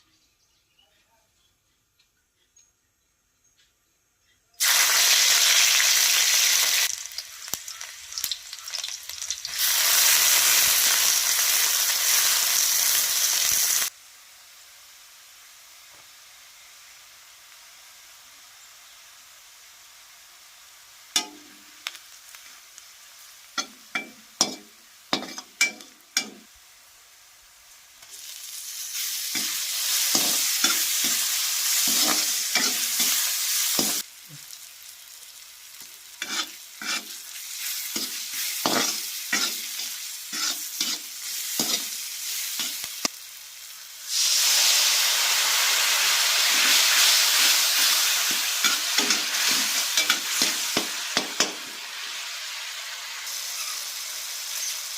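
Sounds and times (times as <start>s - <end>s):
food sizzling in hot oil: 4.6s - 54.9s
metal spatula scraping in pan: 23.6s - 26.4s, 28.2s - 34.0s, 36.2s - 42.9s, 46.5s - 51.6s.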